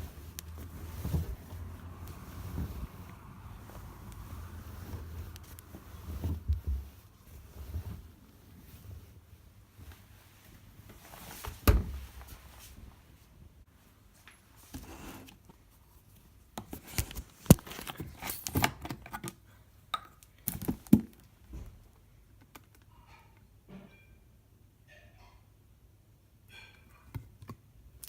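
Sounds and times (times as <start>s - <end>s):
washing machine thump: 11.6s - 12.1s.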